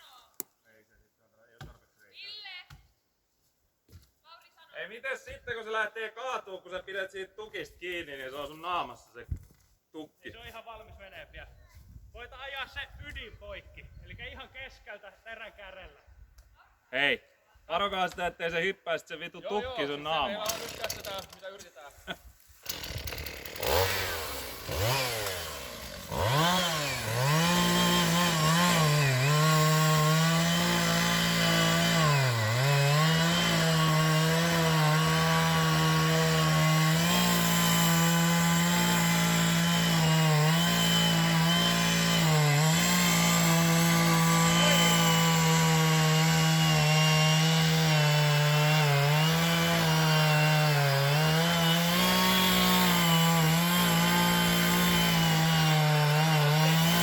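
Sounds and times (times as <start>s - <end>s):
chainsaw cutting into tree trunk: 20.3s - 21.5s, 22.5s - 57.0s.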